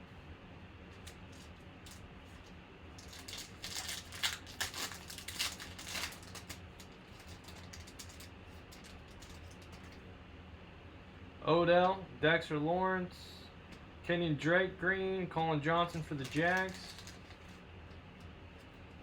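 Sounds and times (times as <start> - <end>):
low electrical hum: 0.0 - 19.0
trading cards clicking and rustling: 1.0 - 10.0, 15.8 - 17.6.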